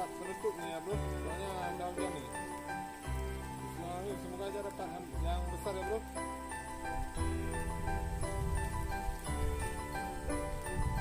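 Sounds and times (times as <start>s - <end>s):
soft background music: 0.0s - 11.0s.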